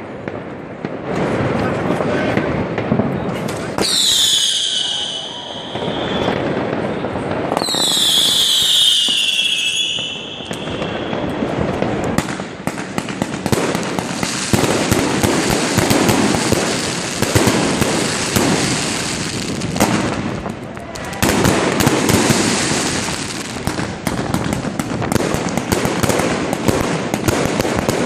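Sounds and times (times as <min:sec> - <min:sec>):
firecrackers crackling and popping: 0:00.0 - 0:28.0
whistling firework shrieking: 0:03.8 - 0:11.4.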